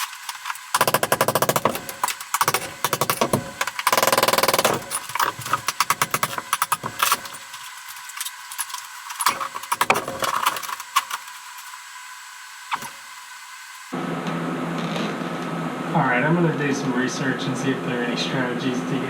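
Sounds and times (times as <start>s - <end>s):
broken pieces clattering: 0.0s - 11.8s.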